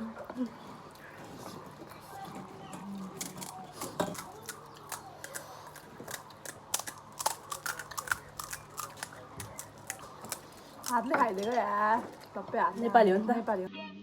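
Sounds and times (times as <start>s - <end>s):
crisp shells crunching: 2.8s - 12.9s.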